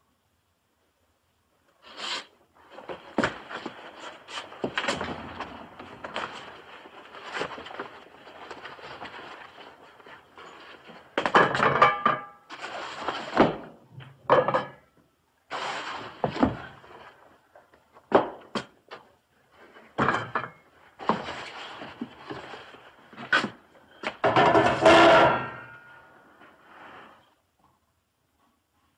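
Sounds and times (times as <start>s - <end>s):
footsteps on wooden boards: 2.7s - 11.4s.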